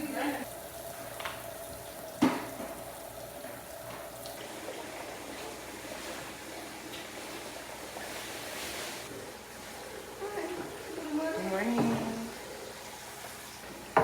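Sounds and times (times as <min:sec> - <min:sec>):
tap running into a sink: 0:01.0 - 0:04.5, 0:11.6 - 0:12.4.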